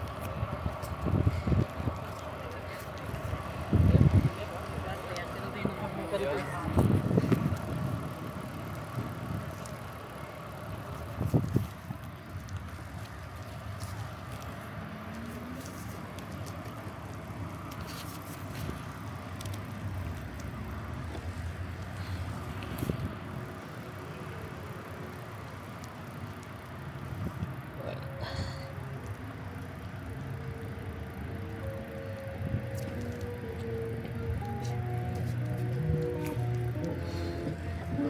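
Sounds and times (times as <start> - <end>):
wind noise: 0.0 - 2.2, 3.1 - 4.4, 6.6 - 9.6, 11.1 - 12.4
bicycle rolling: 0.0 - 38.0.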